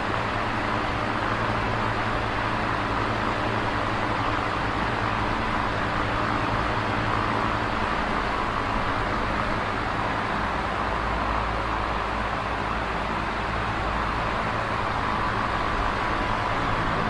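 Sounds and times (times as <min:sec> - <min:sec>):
electric fan whirring: 0:00.0 - 0:17.0.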